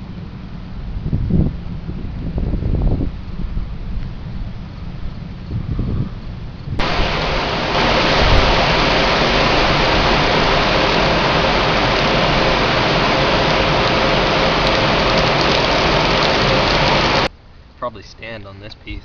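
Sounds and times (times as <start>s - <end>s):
wind rumbling on microphone: 0.0s - 17.4s
heavy rain falling: 6.8s - 17.3s.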